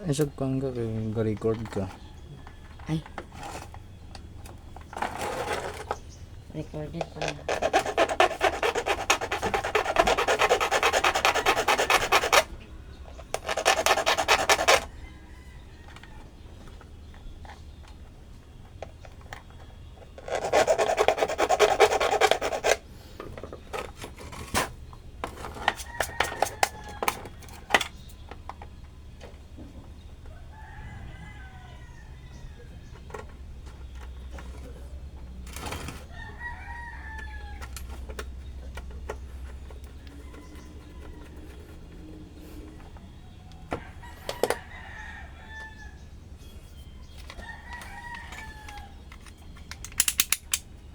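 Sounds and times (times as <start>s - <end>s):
faint chicken calls: 0.0s - 6.1s, 10.9s - 20.8s, 25.3s - 49.8s
harsh rapid rasping: 7.0s - 14.9s, 20.2s - 22.9s.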